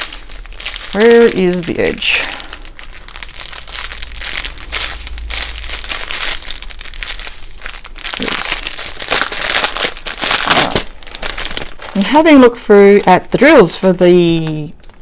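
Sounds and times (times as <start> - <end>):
plastic bags crinkling: 0.0 - 15.0.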